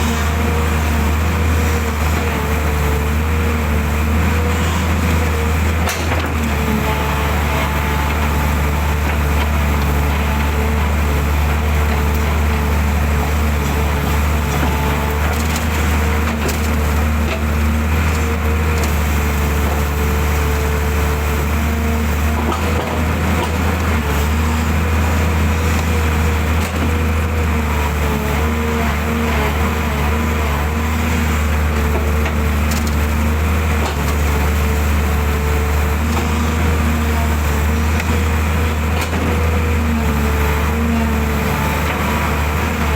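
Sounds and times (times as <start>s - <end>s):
excavator diesel engine drone: 0.0s - 42.9s.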